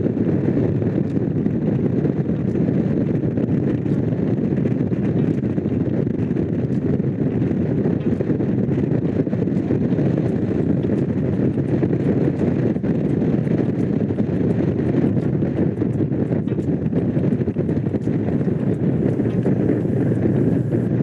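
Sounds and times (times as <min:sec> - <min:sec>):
wind rushing over microphone: 0:00.0 - 0:21.0
motorcycle engine cruising: 0:17.7 - 0:21.0.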